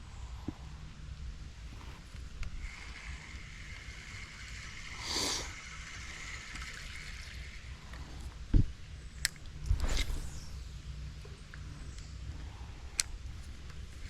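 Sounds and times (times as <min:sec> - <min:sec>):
creek water running: 0:02.6 - 0:08.3.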